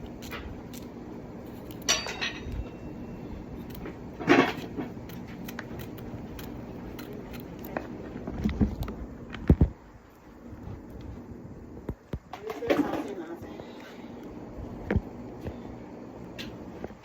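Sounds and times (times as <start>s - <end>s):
pots and utensils clattering: 1.8s - 3.1s, 4.2s - 4.9s.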